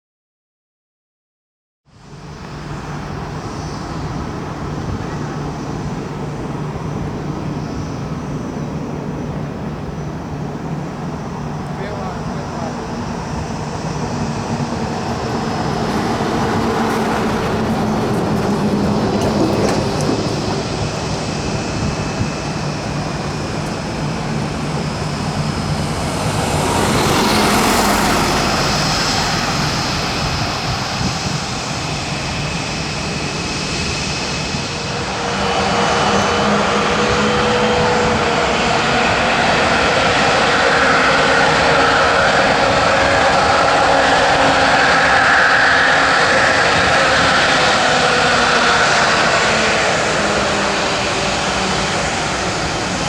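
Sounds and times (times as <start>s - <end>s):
jet engine whine: 1.9s - 53.0s
jet engines running: 2.1s - 53.0s.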